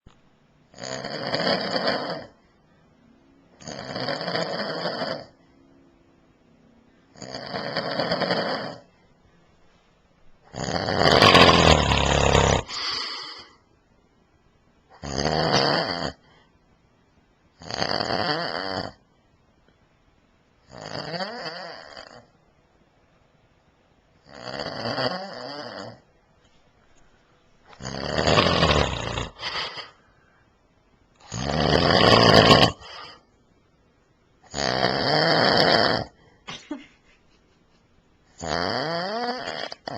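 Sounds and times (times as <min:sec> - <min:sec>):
man snoring: 0:00.8 - 0:02.4, 0:03.6 - 0:05.3, 0:07.1 - 0:08.9, 0:10.5 - 0:13.0, 0:15.0 - 0:16.2, 0:17.6 - 0:19.0, 0:20.7 - 0:22.3, 0:24.3 - 0:26.0, 0:27.7 - 0:29.8, 0:31.2 - 0:33.2, 0:34.5 - 0:36.1, 0:38.4 - 0:39.9.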